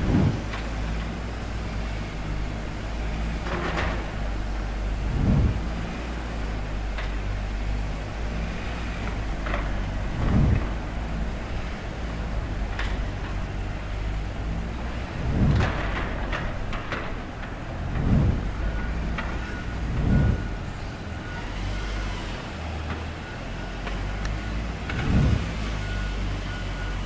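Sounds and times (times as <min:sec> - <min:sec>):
wind buffeting microphone: 0:00.0 - 0:01.0, 0:04.3 - 0:07.7, 0:09.8 - 0:21.1, 0:24.9 - 0:25.6
low rumble of vehicles and machinery: 0:00.0 - 0:27.0
high reversing beep: 0:18.6 - 0:22.4, 0:25.2 - 0:27.0.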